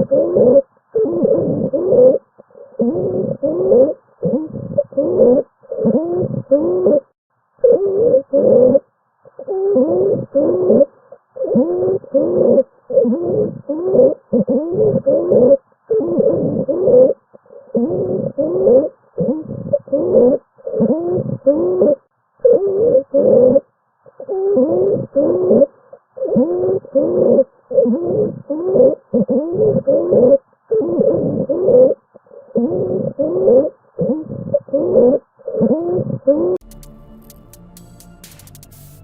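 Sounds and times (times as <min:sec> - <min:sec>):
stridor breath sounds: 0:24.2 - 0:36.6.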